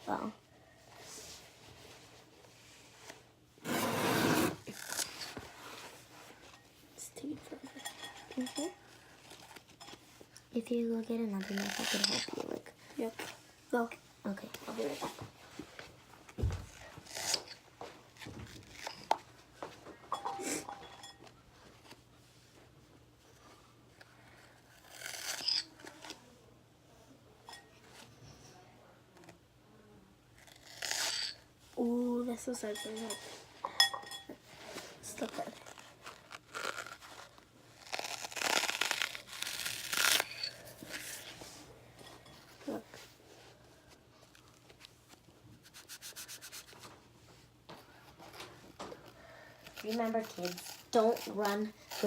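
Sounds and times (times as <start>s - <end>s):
knife sawing through foam sponge: 3.6s - 4.8s
knife scraping while cutting: 3.6s - 5.4s, 11.4s - 12.5s, 17.0s - 17.6s, 24.7s - 26.1s, 30.5s - 31.4s, 34.6s - 41.5s, 49.6s - 52.0s.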